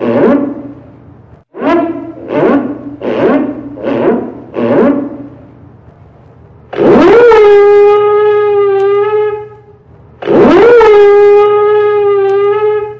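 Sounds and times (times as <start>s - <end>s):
ship alarm siren blasts: 1.5s - 5.3s, 6.8s - 12.9s.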